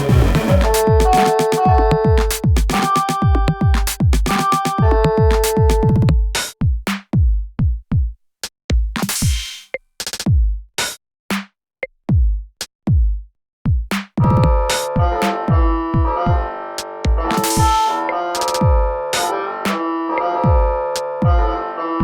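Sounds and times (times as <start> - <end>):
held synth chords: 0.0 - 6.3, 14.3 - 22.0
drum machine kick drums: 0.0 - 11.5, 12.1 - 19.8, 20.4 - 21.6.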